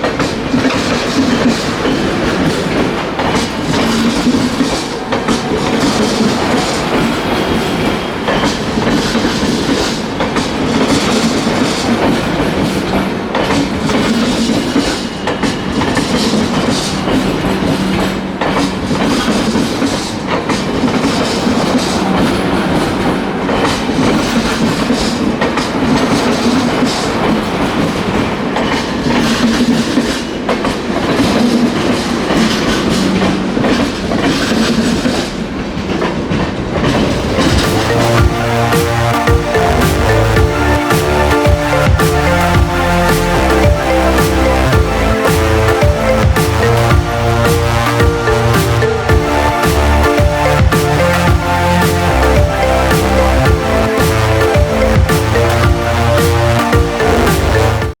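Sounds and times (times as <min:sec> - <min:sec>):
train wheels clattering over rail joints: 0:00.0 - 0:37.6.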